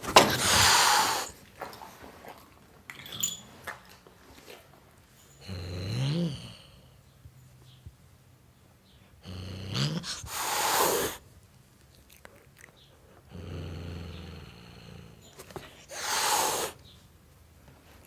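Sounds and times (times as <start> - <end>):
cat hissing: 0.0 - 1.4, 9.4 - 11.2, 15.7 - 16.9
cat growling: 0.2 - 1.4, 9.2 - 11.2, 13.3 - 16.8.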